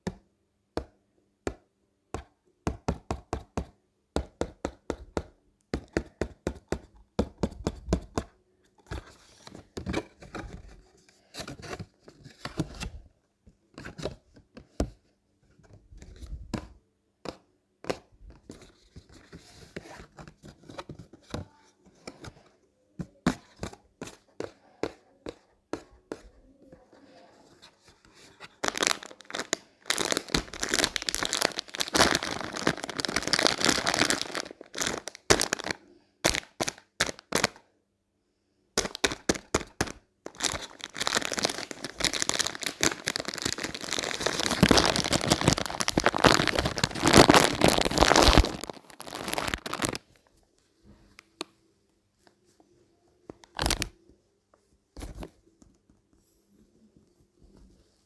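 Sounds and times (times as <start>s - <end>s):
packaging torn and crinkled: 28.6s - 37.5s, 40.3s - 50.0s.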